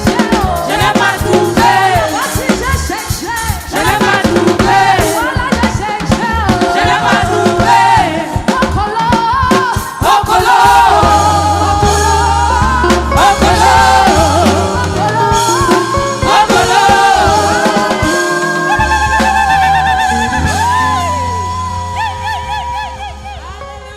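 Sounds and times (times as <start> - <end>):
drums: 0.0 - 23.9
gospel singing with band: 0.0 - 23.9
heavy bass line: 10.3 - 23.9.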